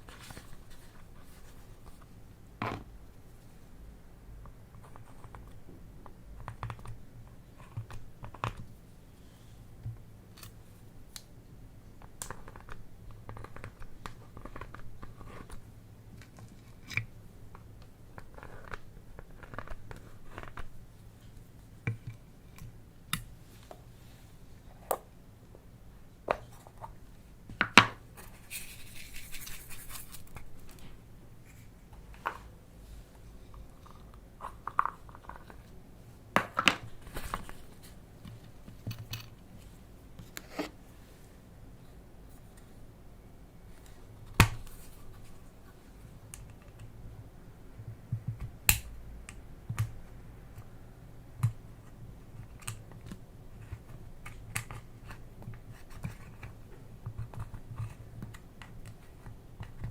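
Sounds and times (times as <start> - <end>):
rustling: 28.2 - 35.8.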